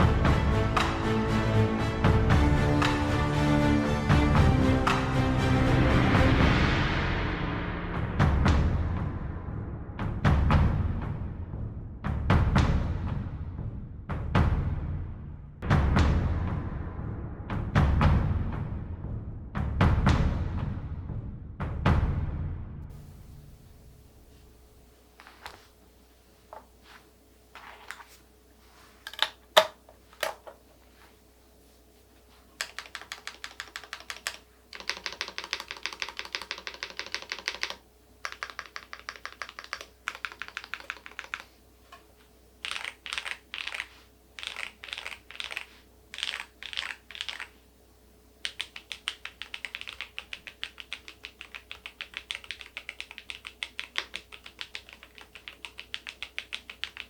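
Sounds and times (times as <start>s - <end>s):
typing on a keyboard: 32.6s - 41.5s, 42.6s - 47.5s, 48.4s - 57.0s.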